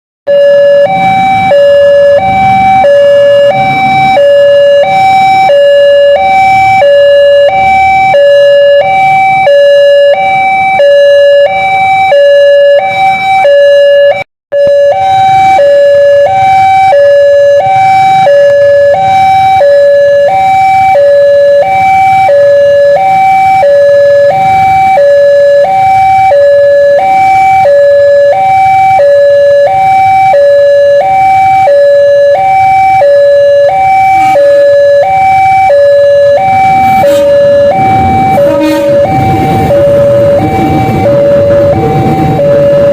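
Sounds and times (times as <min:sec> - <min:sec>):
level crossing two-tone alarm: 0:00.3 - 0:42.9.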